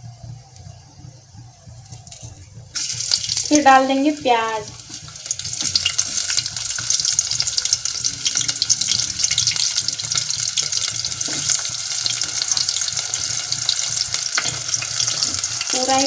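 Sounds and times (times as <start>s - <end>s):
onions sizzling in hot oil: 2.1s - 16.0s.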